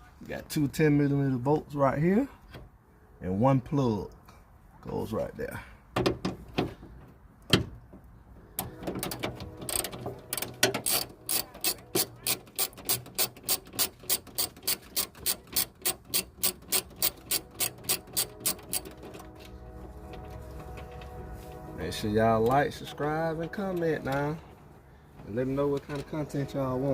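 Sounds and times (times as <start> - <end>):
ratchet clicking: 9.6 - 19.0.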